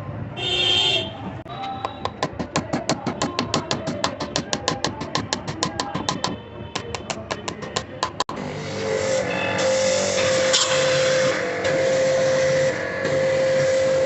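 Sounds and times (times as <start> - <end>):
background music with quick beat: 1.5 - 8.3.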